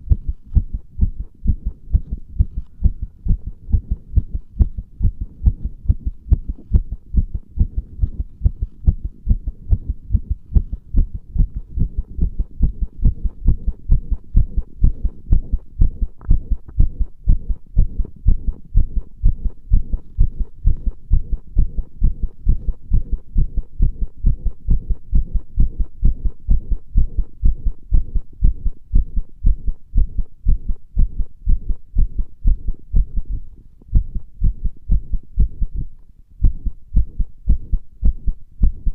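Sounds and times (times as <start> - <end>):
heartbeat low thumps: 0.0 - 38.9.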